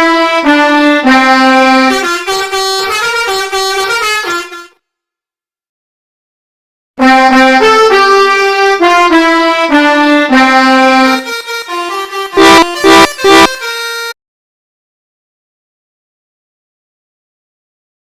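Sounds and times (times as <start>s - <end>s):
melodica playing a tune: 0.0s - 4.8s, 7.0s - 14.2s
short loud melodica blasts: 0.1s - 4.8s, 10.4s - 14.2s.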